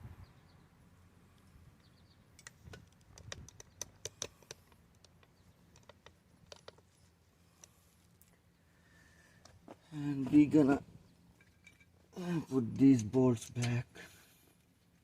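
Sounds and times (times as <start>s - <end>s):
light clicks of metal parts: 1.3s - 8.5s, 11.3s - 12.0s, 12.7s - 15.0s.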